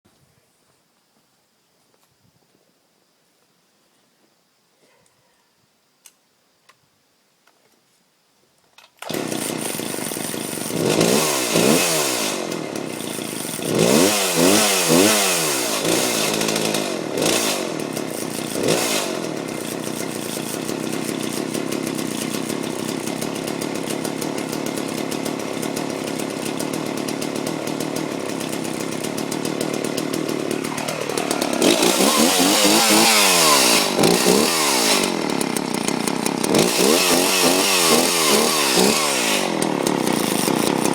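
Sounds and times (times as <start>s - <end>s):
chainsaw engine revving: 9.0s - 40.9s.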